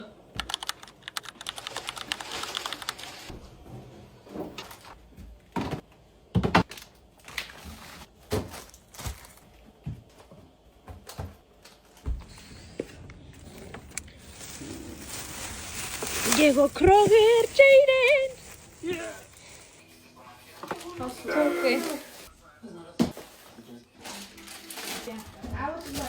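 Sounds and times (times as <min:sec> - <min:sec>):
household items clattering: 0:12.2 - 0:19.9.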